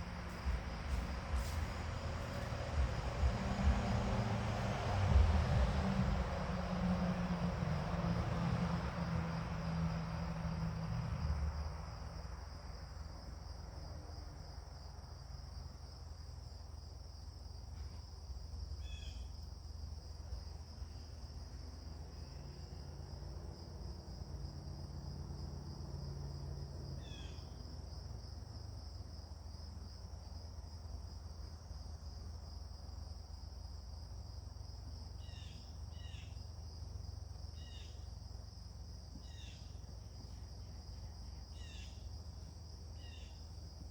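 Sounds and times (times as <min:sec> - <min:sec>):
low rumble: 0:00.0 - 0:08.5
insect chirring: 0:18.8 - 0:19.7, 0:27.0 - 0:27.8, 0:35.0 - 0:43.9.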